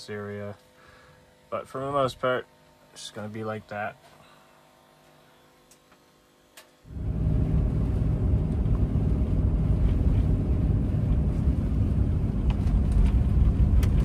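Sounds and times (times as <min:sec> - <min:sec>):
loud low rumble: 0:06.9 - 0:14.0.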